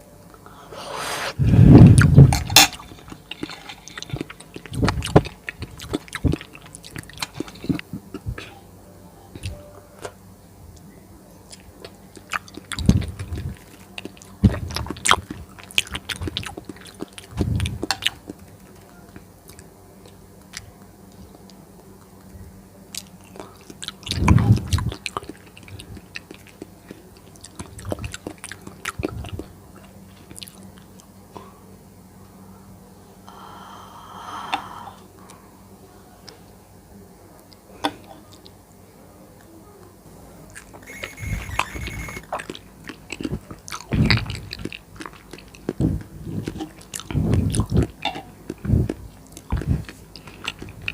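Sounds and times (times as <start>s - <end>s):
person chewing: 1.9s - 8.3s, 11.5s - 18.9s, 22.9s - 31.1s, 40.5s - 50.9s.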